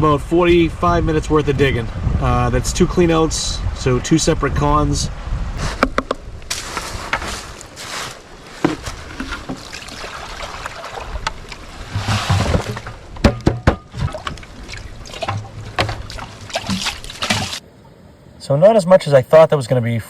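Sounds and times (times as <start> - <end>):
water and gravel swishing in a pan: 6.6 - 13.0, 14.0 - 17.6.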